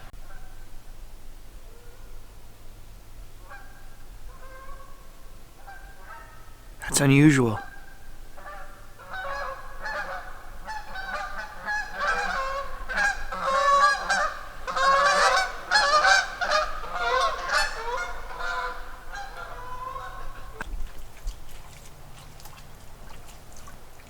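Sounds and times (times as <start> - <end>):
geese honking: 3.4 - 5.0, 5.6 - 6.6, 7.6 - 20.6.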